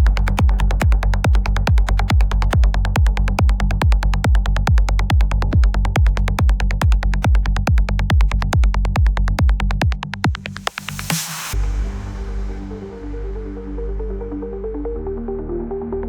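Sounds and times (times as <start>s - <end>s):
ticking percussion: 0.0s - 11.1s
steady kick drum: 0.0s - 13.5s
sustained bass: 0.0s - 16.0s.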